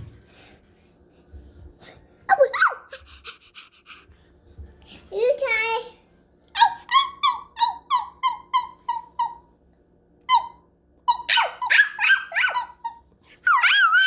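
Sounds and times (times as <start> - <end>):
person making puppy yips: 6.6 - 9.5, 10.3 - 14.0.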